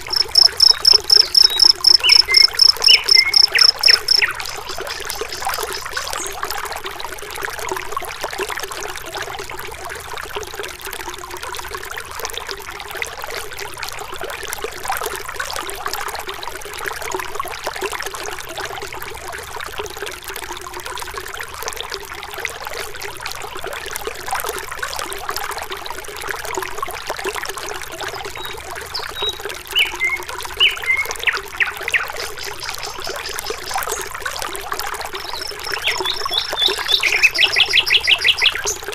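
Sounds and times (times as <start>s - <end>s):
small waterfall splashing: 0.0s - 38.9s
short bird chirps: 0.2s - 4.3s.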